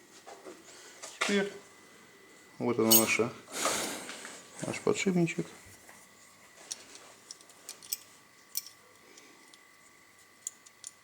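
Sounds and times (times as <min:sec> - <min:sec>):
metal parts clicking and tapping: 0:06.7 - 0:09.6, 0:10.4 - 0:11.0.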